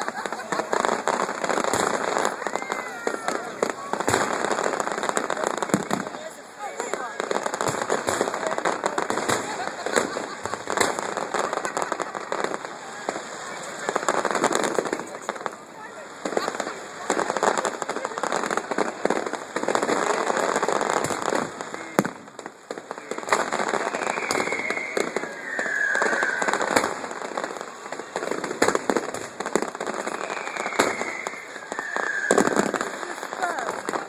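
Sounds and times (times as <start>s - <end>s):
fireworks crackling: 0.0s - 34.0s
falling firework whistles: 1.0s - 6.2s, 23.3s - 27.6s, 29.6s - 33.9s
fireworks shells bursting: 18.3s - 34.0s.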